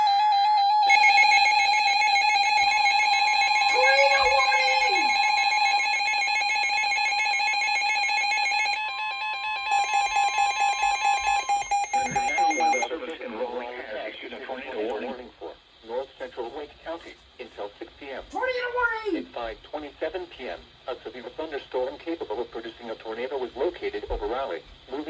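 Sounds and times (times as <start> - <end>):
two-tone alert alarm: 0.0 - 12.9.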